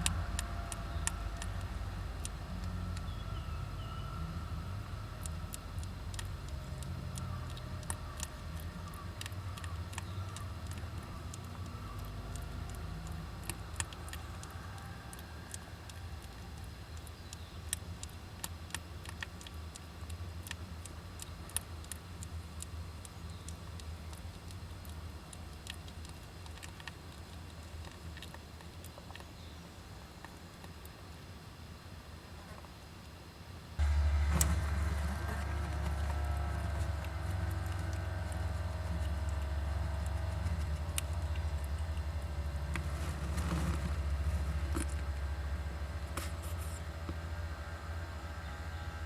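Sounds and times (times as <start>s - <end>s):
low rumble: 33.8s - 49.0s
claws scratching on wood: 34.1s - 45.0s, 46.1s - 46.9s.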